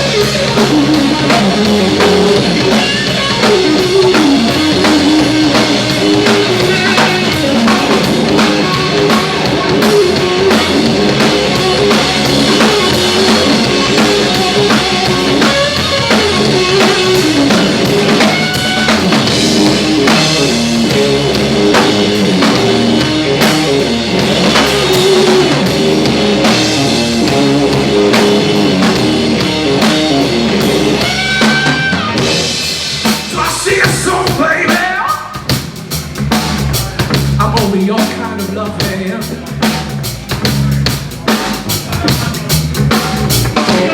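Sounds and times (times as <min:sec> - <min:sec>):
bending guitar notes: 0:00.0 - 0:32.8
blues rock band playing: 0:00.0 - 0:43.9.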